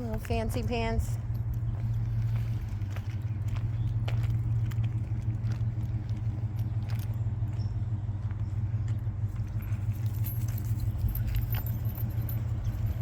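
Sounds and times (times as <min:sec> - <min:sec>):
faint clicks and jingles: 0:00.0 - 0:07.8, 0:08.4 - 0:13.0
low mechanical hum: 0:00.0 - 0:13.0.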